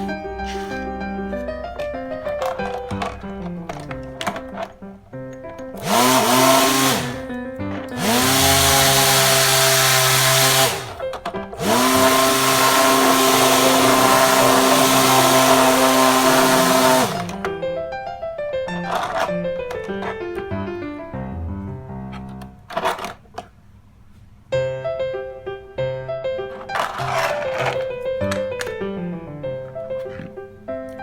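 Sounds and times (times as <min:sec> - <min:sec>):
small electric motor whining: 0:05.8 - 0:07.3, 0:08.0 - 0:11.0, 0:11.6 - 0:17.6.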